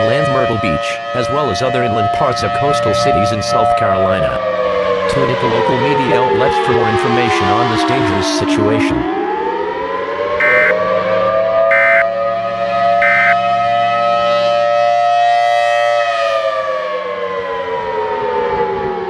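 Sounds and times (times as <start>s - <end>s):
warning siren wailing: 9.1s - 11.1s, 11.7s - 12.2s, 13.0s - 13.4s
short high beeps: 10.4s - 10.8s, 11.7s - 12.1s, 13.0s - 13.4s.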